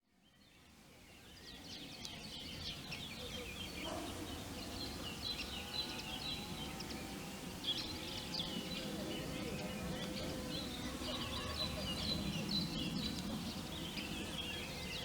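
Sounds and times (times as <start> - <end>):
songbirds chirping: 0.1 - 15.0.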